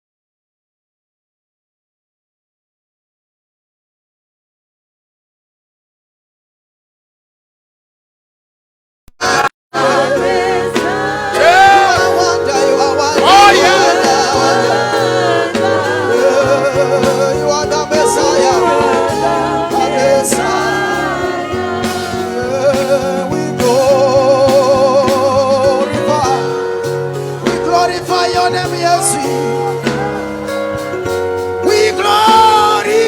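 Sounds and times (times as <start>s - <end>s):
steady bass line: 9.1s - 33.0s
sustained chords: 9.2s - 32.1s
gospel singing with vibrato: 9.2s - 33.0s.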